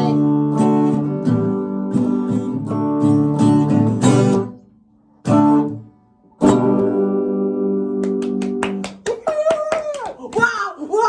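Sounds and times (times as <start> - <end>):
guitar chords strummed: 0.0 - 8.8.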